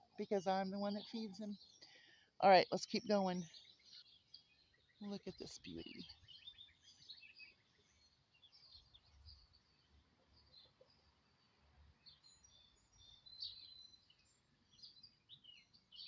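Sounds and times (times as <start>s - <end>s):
bird chirps and twitters: 0.1s - 9.6s.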